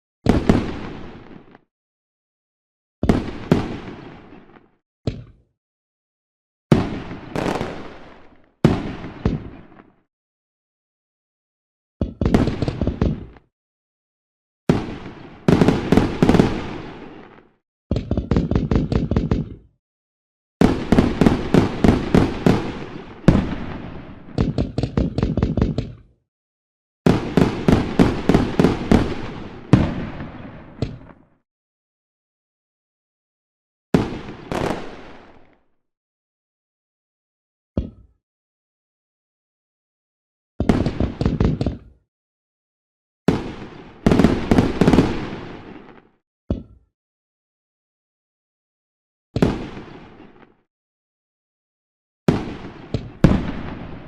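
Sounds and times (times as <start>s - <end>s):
fireworks bangs: 0.3s - 1.6s, 3.0s - 4.7s, 6.7s - 9.9s, 12.2s - 13.4s, 14.7s - 17.5s, 20.6s - 25.8s, 27.0s - 31.3s, 34.0s - 35.6s, 40.6s - 41.8s, 43.3s - 46.1s, 49.4s - 50.5s, 52.3s - 54.0s
crackling firework pops: 6.7s - 10.0s, 12.2s - 13.5s, 20.6s - 26.0s, 27.1s - 31.3s, 40.6s - 41.9s, 49.4s - 50.6s, 52.3s - 53.9s.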